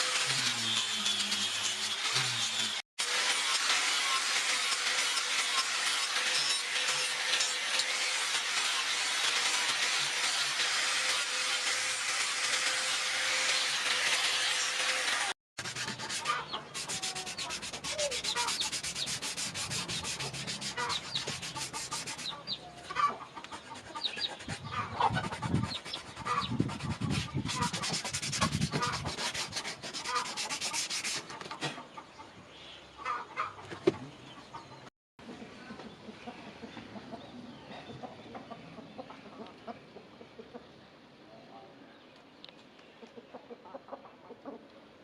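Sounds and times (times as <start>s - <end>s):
abrasive rubbing on metal: 0.0s - 2.8s, 13.5s - 22.4s, 23.8s - 31.3s
chickens clucking: 20.8s - 27.8s, 31.2s - 32.4s, 33.0s - 40.8s, 43.0s - 44.8s.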